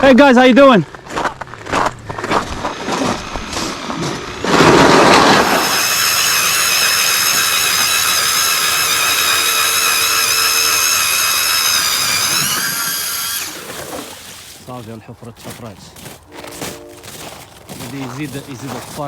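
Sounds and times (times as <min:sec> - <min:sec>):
power ice auger drilling: 0:01.6 - 0:14.6.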